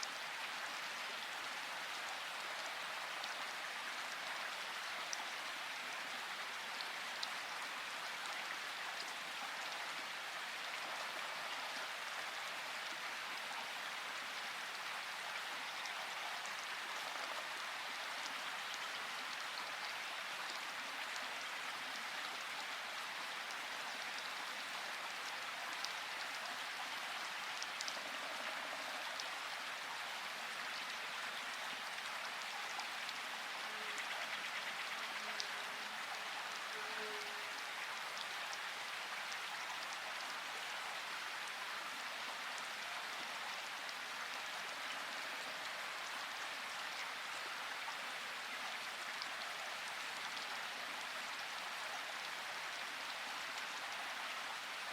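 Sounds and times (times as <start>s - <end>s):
steady rain: 0.0s - 54.9s.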